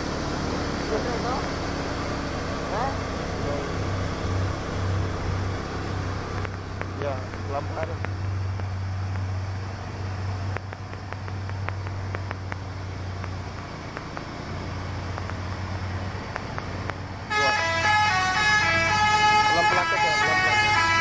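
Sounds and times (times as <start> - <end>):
truck engine idling: 0.0 - 21.0
musical truck horn: 17.3 - 21.0.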